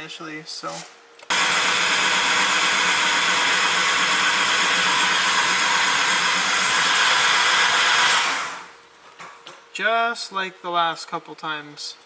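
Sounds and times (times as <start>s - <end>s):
rotary engine running: 1.3s - 8.7s.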